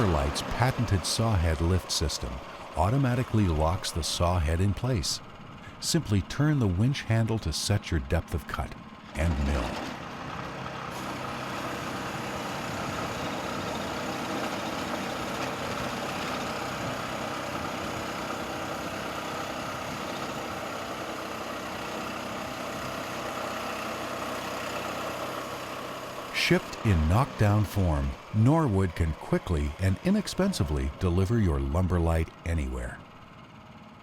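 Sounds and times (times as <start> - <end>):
band saw cutting log: 0.0 - 5.0, 25.0 - 32.6
gasoline engine running: 0.0 - 34.0.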